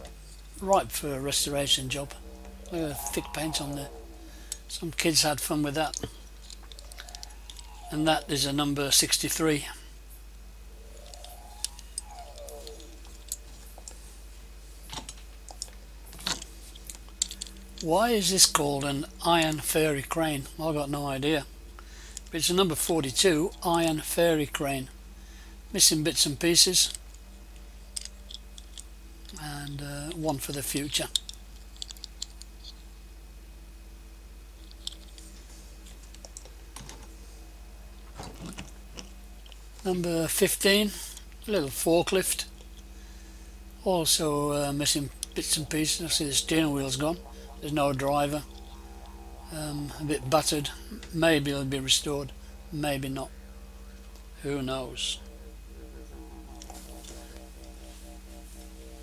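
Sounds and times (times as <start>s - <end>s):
steady low hum: 0.0s - 59.0s
metal toy cars clicking: 14.9s - 17.9s.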